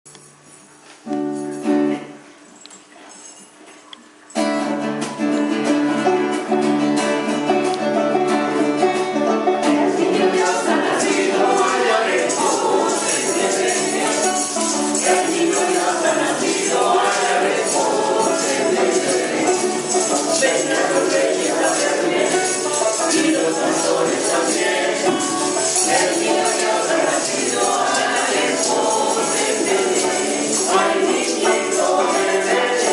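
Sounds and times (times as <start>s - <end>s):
tambourine shaking: 0.1s - 3.6s, 9.8s - 32.9s
guitar: 0.1s - 32.9s
choir singing a carol: 9.5s - 32.9s.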